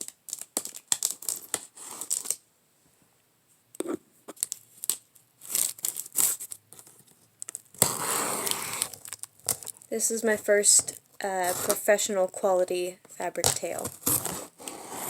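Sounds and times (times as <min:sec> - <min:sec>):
package tearing and rustling: 0:00.0 - 0:02.4, 0:04.3 - 0:10.0, 0:13.7 - 0:15.0.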